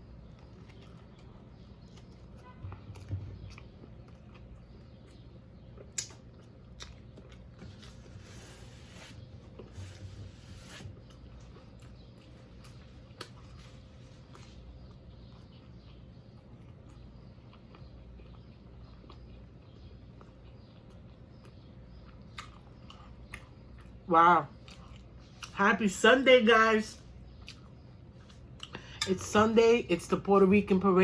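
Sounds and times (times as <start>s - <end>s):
chewing and biting sandwich: 0.0s - 10.0s, 10.7s - 25.5s.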